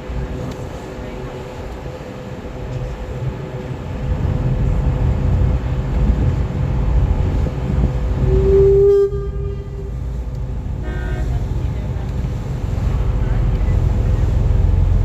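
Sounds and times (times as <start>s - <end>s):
boat engine rumble: 0.0s - 15.0s
wind: 0.0s - 15.0s
boat horn note: 7.9s - 11.8s.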